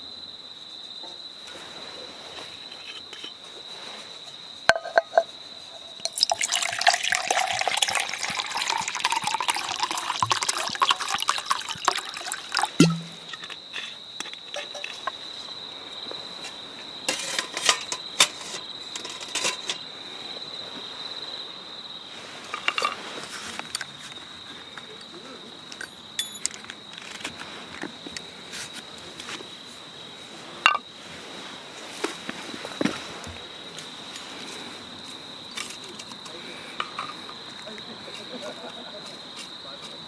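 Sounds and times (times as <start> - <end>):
cookware and utensils clinking: 4.7 - 13.6, 17.1 - 19.8, 22.6 - 23.0, 25.8 - 26.6.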